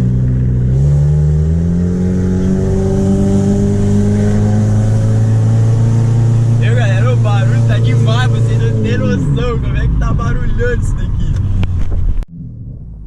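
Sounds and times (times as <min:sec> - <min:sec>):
loud unmuffled car engine accelerating: 0:00.0 - 0:13.0.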